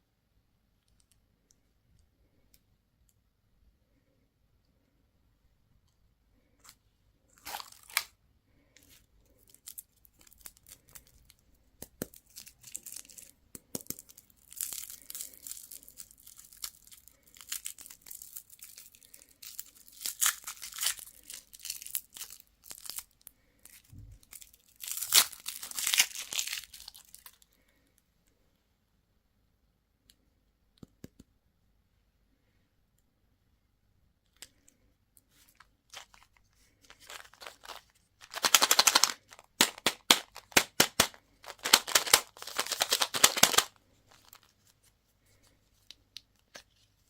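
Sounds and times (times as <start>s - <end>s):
candy wrapper crinkling: 6.6s - 8.2s, 8.8s - 27.6s, 34.3s - 47.0s.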